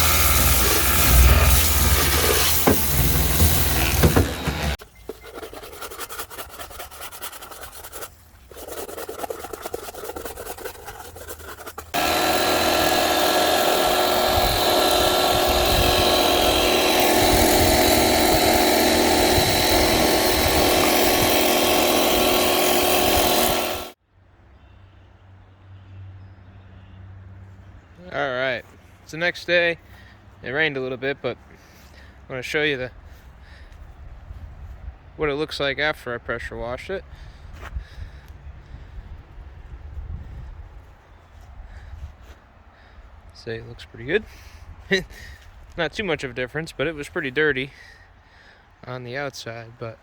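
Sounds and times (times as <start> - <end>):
pressure washer pump whine: 0.0 - 4.8, 11.9 - 24.0
pressure washer spraying: 0.0 - 4.8, 7.4 - 24.0
rapid scrubbing strokes: 0.0 - 24.0.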